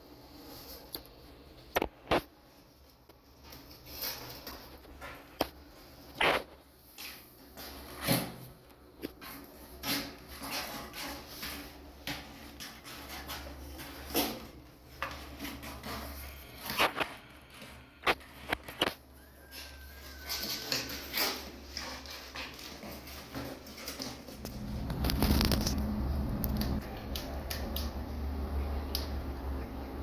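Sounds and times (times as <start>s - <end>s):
knocks scrapes and rustles: 1.8s - 27.0s
low hum: 24.3s - 30.0s.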